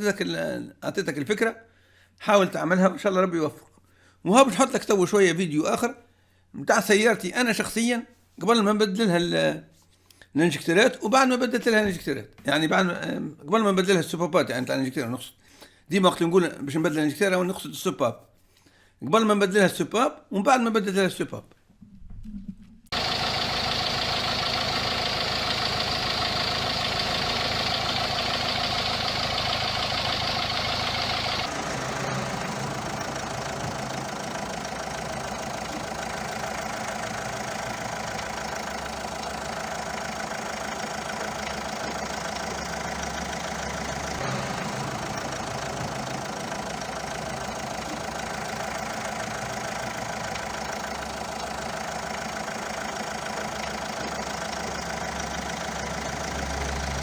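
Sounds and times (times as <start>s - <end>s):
diesel engine idling with clatter: 22.9s - 57.0s.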